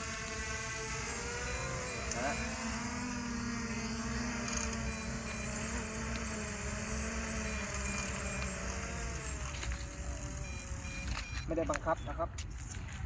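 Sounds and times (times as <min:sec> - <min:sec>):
drone propellers whirring: 0:00.0 - 0:11.8.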